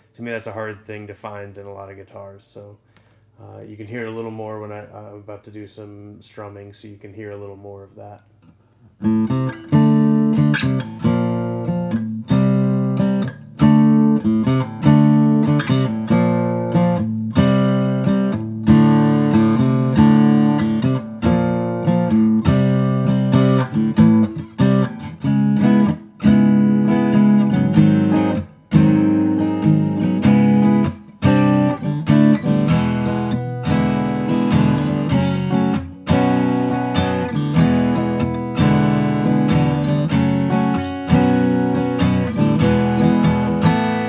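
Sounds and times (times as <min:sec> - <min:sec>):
acoustic guitar strumming chords: 0:09.0 - 0:44.0.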